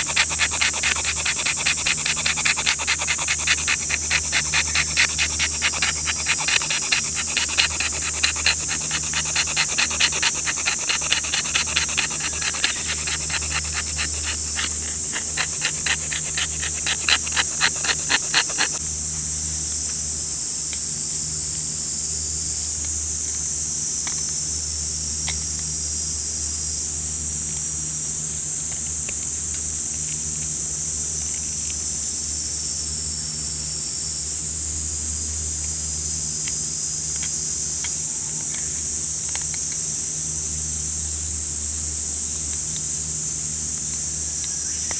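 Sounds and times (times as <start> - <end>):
cicada calling in rapid pulses: 0.0 - 18.8
cicadas droning: 0.0 - 44.9.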